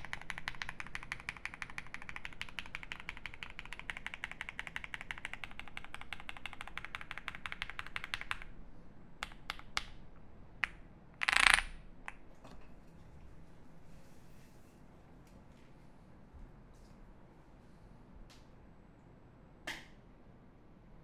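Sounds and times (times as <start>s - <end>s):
mechanical keyboard typing: 0.0s - 8.5s.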